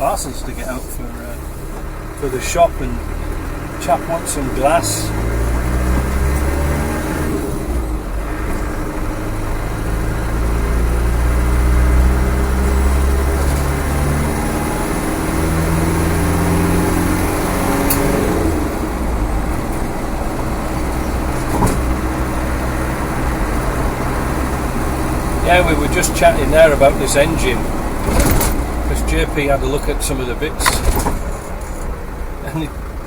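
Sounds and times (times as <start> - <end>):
diesel engine from inside cab: 0.0 - 33.0
road noise: 0.0 - 33.0
short knocks: 21.3 - 22.1.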